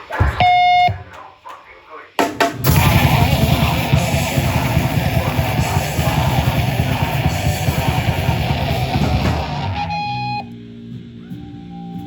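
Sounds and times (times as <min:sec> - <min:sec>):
distorted guitars: 0:00.0 - 0:10.9
drums: 0:00.0 - 0:12.0
heavy rock band playing live: 0:02.6 - 0:10.4
held notes ringing out: 0:08.4 - 0:10.5.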